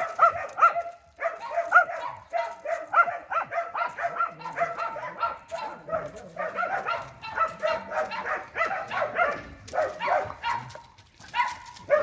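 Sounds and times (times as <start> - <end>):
dogs barking and yelping: 0.0 - 12.0.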